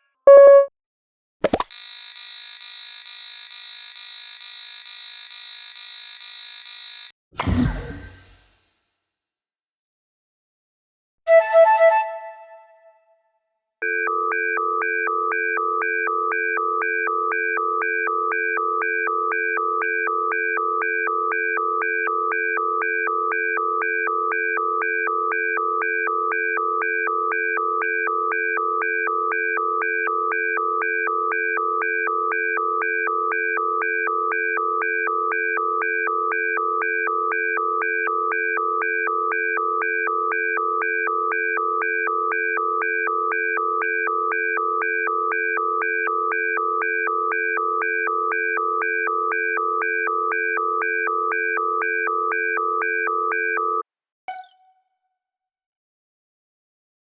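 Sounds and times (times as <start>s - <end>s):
electronic alarm warbling: 1.4s - 2.2s, 6.6s - 8.6s, 54.3s - 54.6s.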